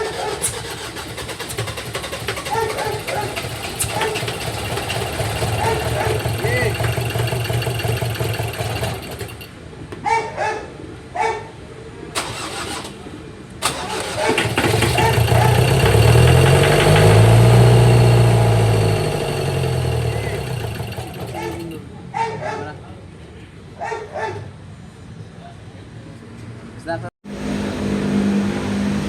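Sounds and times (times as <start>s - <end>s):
vehicle engine humming: 0.0s - 9.6s, 13.6s - 22.0s, 27.3s - 29.0s.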